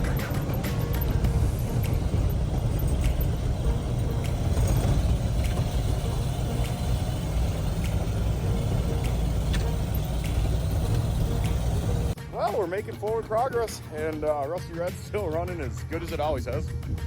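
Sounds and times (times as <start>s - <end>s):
truck engine rumbling: 0.0s - 12.2s.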